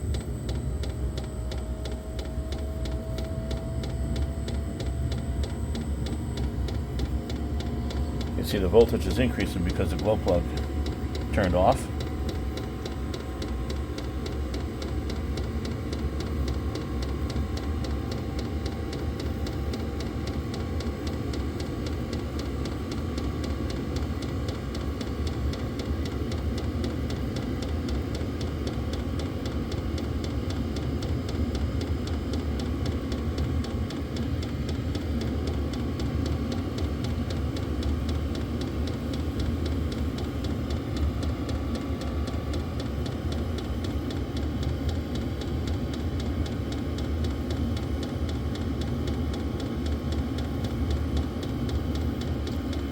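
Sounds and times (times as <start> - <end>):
faint steady whine: 0.0 - 20.2
air heater fan and combustion rush: 0.0 - 52.9.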